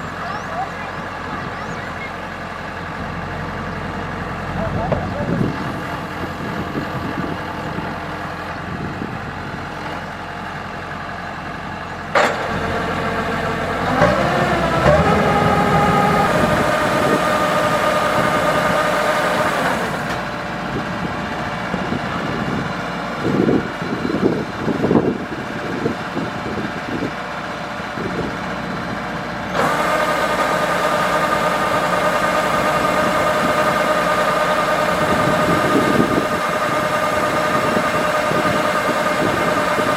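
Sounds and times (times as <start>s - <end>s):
combine harvester engine: 0.0s - 39.9s
clunks: 12.1s - 12.7s.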